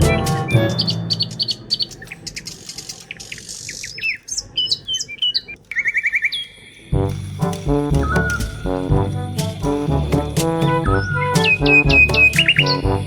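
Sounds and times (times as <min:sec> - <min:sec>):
music with low notes: 0:00.0 - 0:01.2, 0:07.0 - 0:13.0
birds chirping and whistling: 0:00.0 - 0:06.9, 0:08.0 - 0:08.9, 0:10.8 - 0:12.9.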